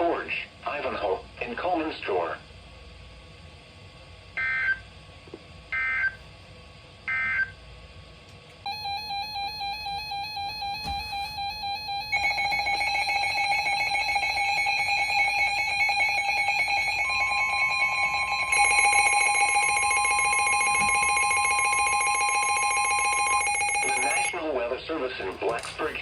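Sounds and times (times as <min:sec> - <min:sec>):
pulsing electronic alarm tones: 0:08.7 - 0:24.4
steady alert tone: 0:08.7 - 0:24.4.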